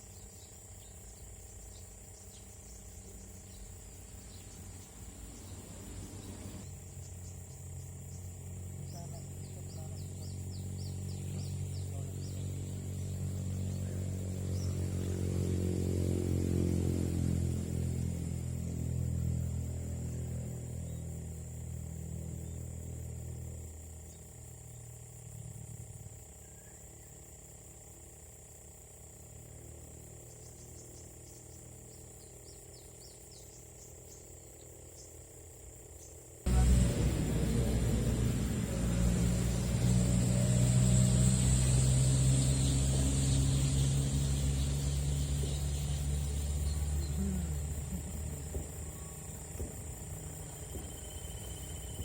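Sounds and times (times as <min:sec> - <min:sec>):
bird chirping: 0:00.0 - 0:15.5, 0:30.2 - 0:35.2, 0:36.0 - 0:52.0
vehicle engine running: 0:00.0 - 0:35.0, 0:36.5 - 0:52.0
insect drone: 0:00.0 - 0:52.0
loud low rumble: 0:36.5 - 0:50.8.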